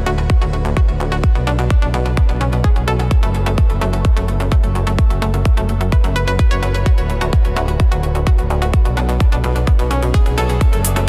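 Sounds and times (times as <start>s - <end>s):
four-on-the-floor kick drum: 0.0s - 11.0s
melodic techno track: 0.0s - 11.0s
synth chords and bass: 0.0s - 11.0s.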